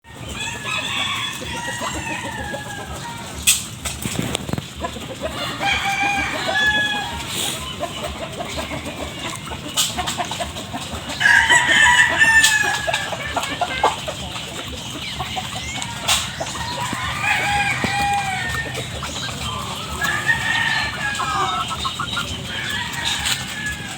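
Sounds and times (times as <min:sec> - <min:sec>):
chickens clucking: 0:00.0 - 0:23.9
rooster crowing: 0:00.1 - 0:03.4, 0:05.3 - 0:07.7, 0:11.2 - 0:13.3, 0:15.6 - 0:23.9.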